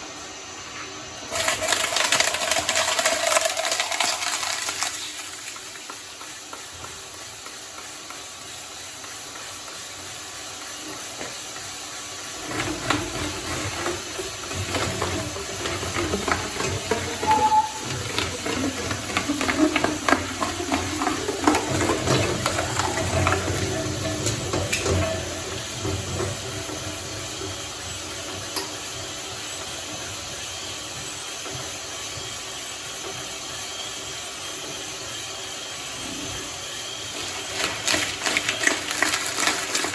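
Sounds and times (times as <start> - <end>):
shredder crunching and crackling: 1.3 - 7.1, 12.4 - 26.5, 37.1 - 39.9.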